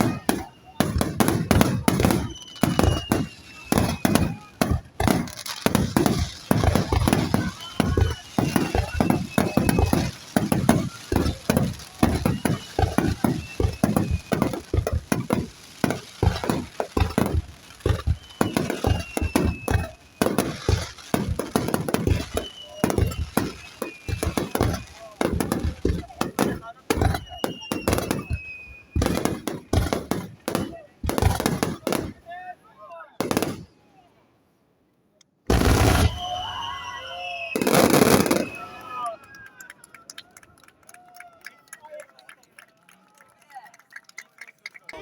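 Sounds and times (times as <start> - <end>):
fireworks bursting with bangs: 0.0 - 32.4, 33.2 - 33.7, 35.5 - 39.2
thin falling whistle: 2.1 - 4.5, 6.8 - 10.5, 12.0 - 14.6, 17.9 - 20.8, 22.1 - 25.0, 27.1 - 29.2, 35.6 - 39.4.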